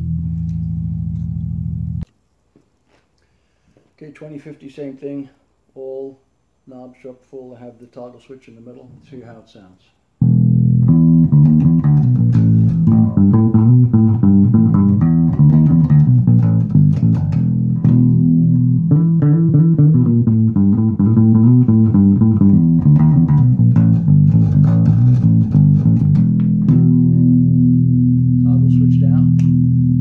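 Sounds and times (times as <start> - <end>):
electric bass plucked notes: 0.0 - 2.1, 10.2 - 30.0.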